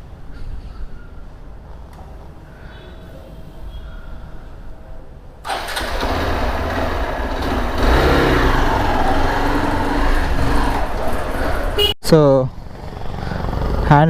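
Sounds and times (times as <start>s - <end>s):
motorcycle engine starting and running: 5.4s - 11.9s.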